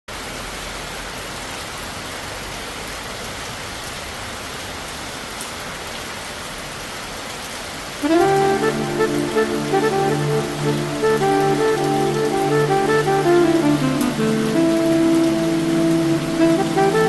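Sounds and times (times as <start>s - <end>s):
heavy rain hissing: 7.8s - 17.0s
music with held notes: 8.0s - 17.0s.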